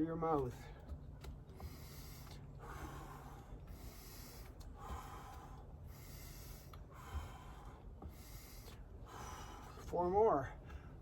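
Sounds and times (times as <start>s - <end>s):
man breathing during exercise: 0.6s - 9.9s.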